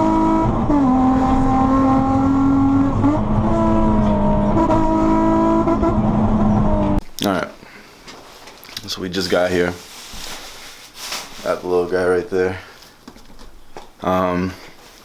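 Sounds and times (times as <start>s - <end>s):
car cabin road rumble: 0.0s - 7.0s
humming engine drone: 0.0s - 7.0s.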